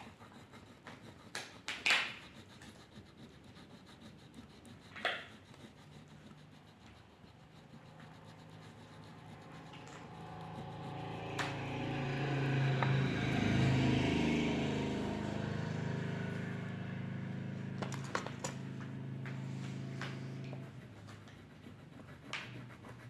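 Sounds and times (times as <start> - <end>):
vehicle engine running: 9.6 - 21.7.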